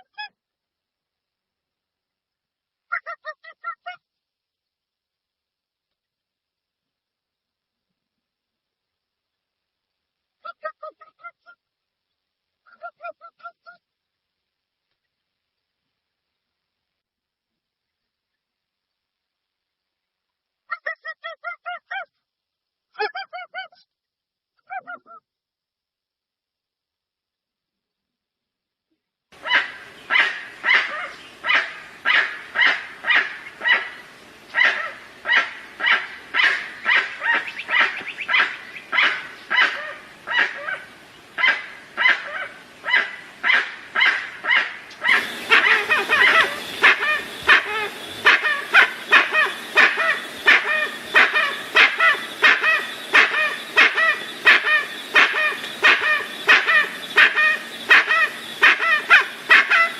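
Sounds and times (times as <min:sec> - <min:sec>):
bird honking calls: 0:29.4 - 0:59.9.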